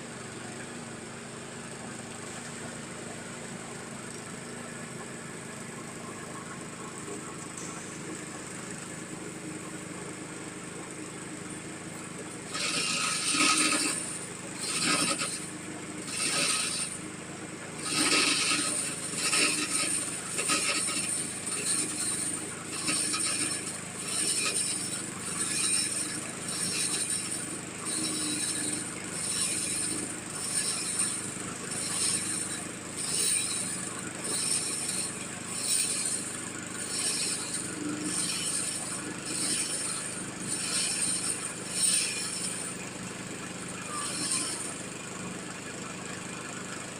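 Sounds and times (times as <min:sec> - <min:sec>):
engine hum: 0:00.0 - 0:46.9
mechanical rattle and clank: 0:12.3 - 0:17.1, 0:17.8 - 0:45.0.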